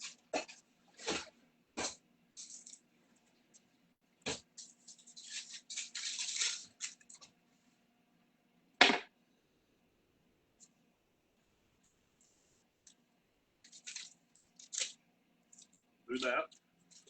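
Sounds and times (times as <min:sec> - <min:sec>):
rustling and scraping: 0:04.3 - 0:07.8, 0:13.6 - 0:17.0.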